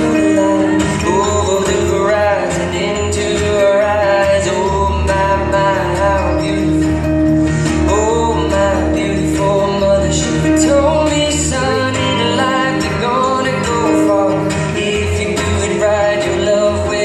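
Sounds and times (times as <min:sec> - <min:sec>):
song with singing and bass: 0:00.0 - 0:17.0.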